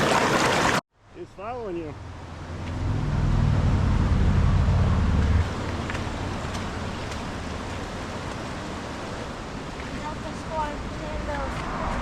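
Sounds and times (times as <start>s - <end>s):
waterfall rushing: 1.5s - 11.6s
loud low rumble: 1.9s - 5.6s.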